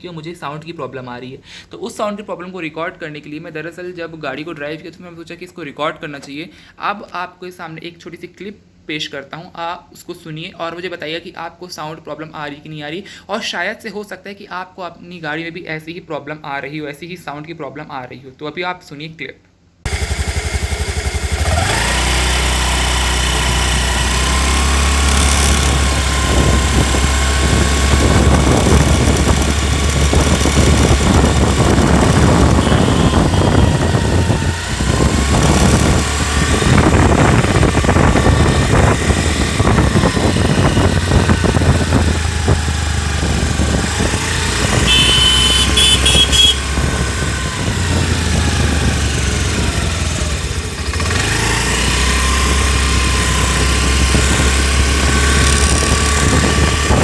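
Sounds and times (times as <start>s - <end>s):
constant rattling: 19.9s - 57.0s
scooter engine whine: 19.9s - 57.0s.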